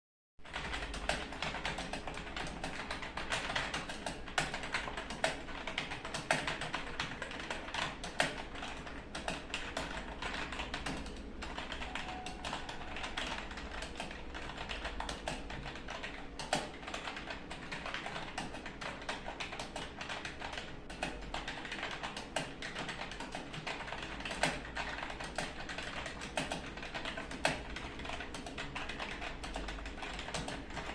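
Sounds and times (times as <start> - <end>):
low steady hum: 0.5 - 22.0
fast keyboard typing: 0.5 - 30.9.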